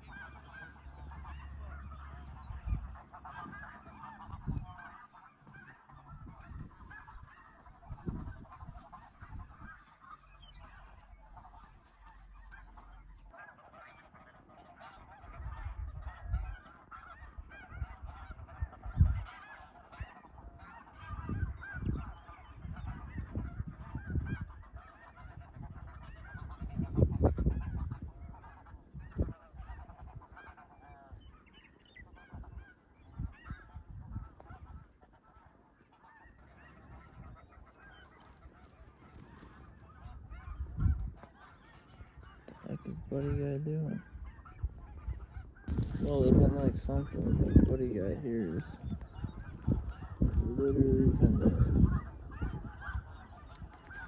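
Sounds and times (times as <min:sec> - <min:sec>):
low rumbles on microphone: 0:00.0 - 0:04.9, 0:05.5 - 0:13.4, 0:44.1 - 0:54.0
snow geese honking: 0:00.0 - 0:54.0.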